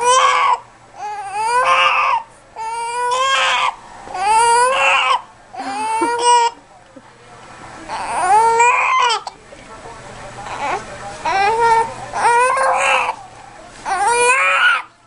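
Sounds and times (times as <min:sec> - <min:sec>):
baby crying: 0:00.0 - 0:06.6, 0:07.9 - 0:09.3, 0:10.4 - 0:13.2, 0:13.8 - 0:14.9.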